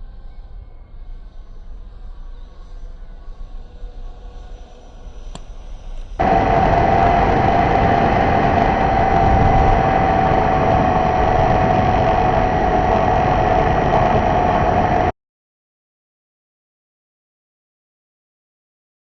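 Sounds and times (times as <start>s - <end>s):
model airplane motor and propeller: 1.6s - 15.1s.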